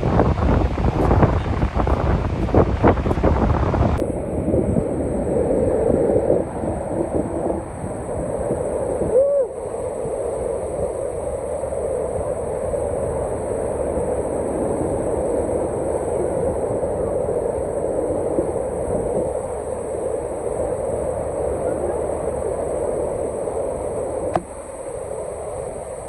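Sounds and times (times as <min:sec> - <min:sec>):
waterfall roaring: 0:00.0 - 0:05.4.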